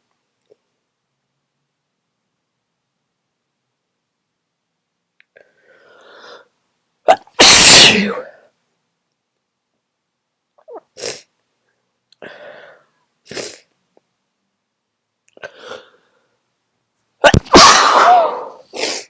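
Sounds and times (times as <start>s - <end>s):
person sneezing loudly: 7.1s - 8.4s, 13.3s - 13.7s, 17.2s - 19.0s.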